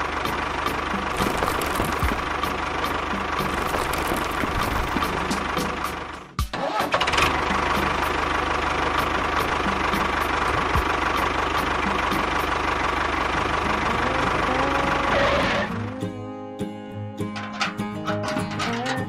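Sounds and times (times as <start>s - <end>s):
small engine running with whine: 0.0s - 16.2s.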